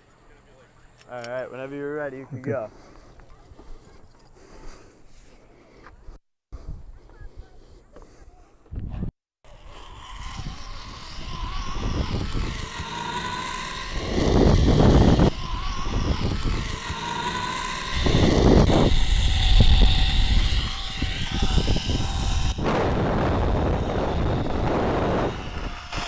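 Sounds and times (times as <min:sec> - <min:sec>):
zipline trolley wheels whirring: 0:09.5 - 0:26.0
wind buffeting microphone: 0:10.2 - 0:26.0.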